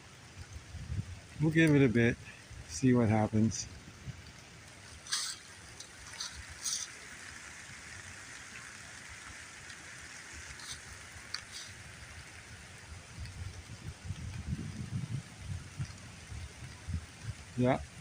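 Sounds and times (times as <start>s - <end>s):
steady rain hiss: 0.0s - 18.0s
sharp drips: 4.1s - 18.0s.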